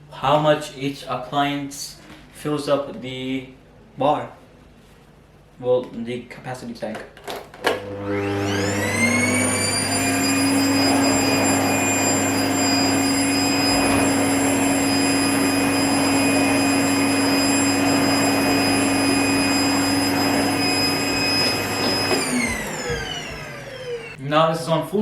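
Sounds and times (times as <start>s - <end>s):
vacuum cleaner motor whine: 7.6s - 24.2s.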